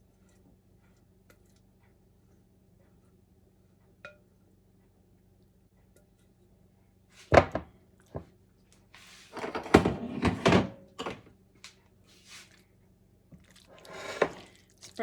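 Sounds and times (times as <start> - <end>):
utensil knocking and scraping a bowl: 13.8 - 14.5.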